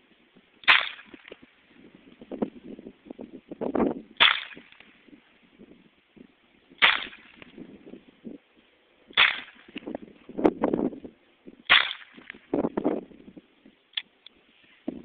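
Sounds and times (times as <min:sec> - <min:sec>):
muffled pistol shots: 0:00.6 - 0:01.4, 0:04.2 - 0:04.9, 0:06.8 - 0:07.6, 0:09.1 - 0:09.9, 0:11.6 - 0:12.5.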